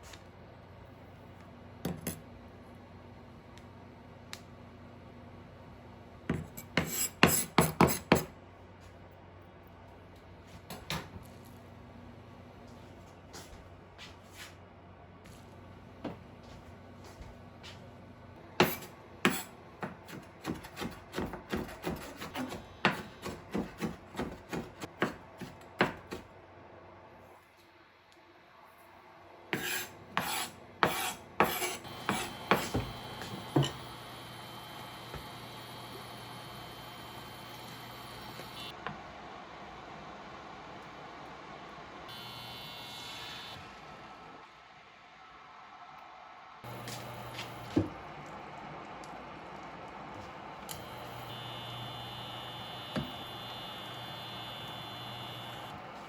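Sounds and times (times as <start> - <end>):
rasping scraping strokes: 29.6 - 32.4.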